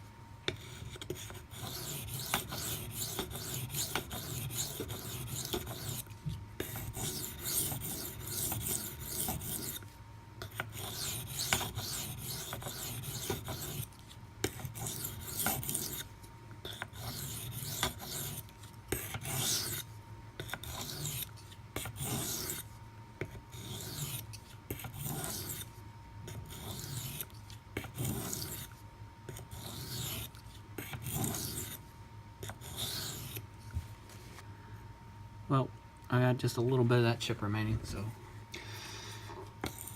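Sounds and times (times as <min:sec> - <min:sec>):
knife blade scraping on whetstone: 0:00.6 - 0:09.8, 0:10.4 - 0:16.1, 0:16.7 - 0:19.8, 0:20.4 - 0:22.7, 0:23.3 - 0:25.7, 0:26.3 - 0:31.8.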